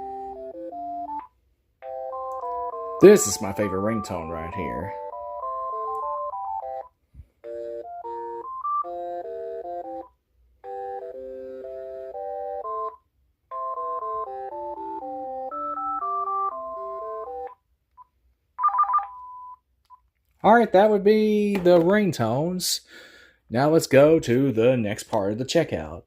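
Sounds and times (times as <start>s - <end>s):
chiming phone ringtone: 0.0s - 17.6s, 18.6s - 19.6s.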